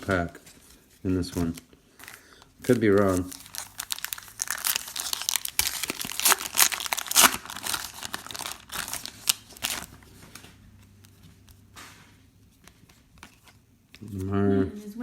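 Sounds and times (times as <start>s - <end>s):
wrappers tearing and crinkling: 1.1s - 11.1s.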